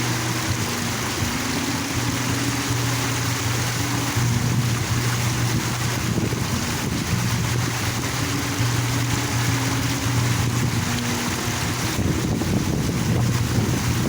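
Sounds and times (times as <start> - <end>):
fountain splashing: 0.0 - 14.0
low hum: 0.0 - 14.0.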